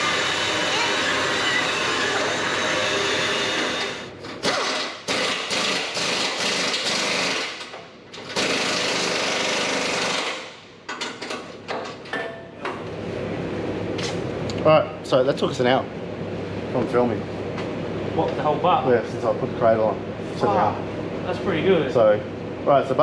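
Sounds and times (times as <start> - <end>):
power drill drilling steel: 0.0 - 6.1.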